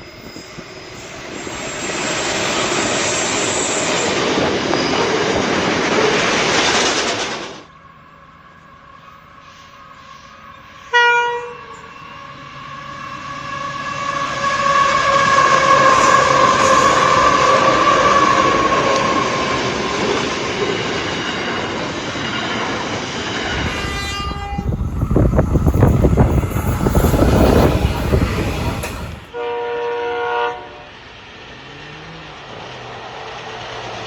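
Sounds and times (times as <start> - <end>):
passing train rumble: 0.0 - 34.0
train horn blasts: 9.4 - 19.4, 23.6 - 26.3, 27.6 - 31.0.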